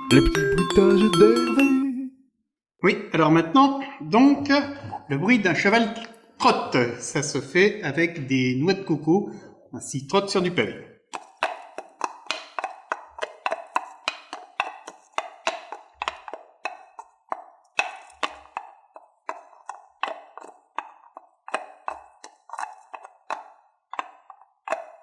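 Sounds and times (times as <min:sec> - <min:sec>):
coconut shells clip-clopping: 0:11.1 - 0:25.0.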